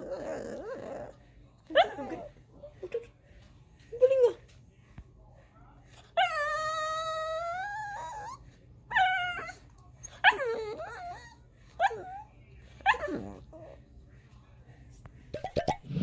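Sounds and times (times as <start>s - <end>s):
dog whining: 0.0s - 2.3s, 6.2s - 13.8s.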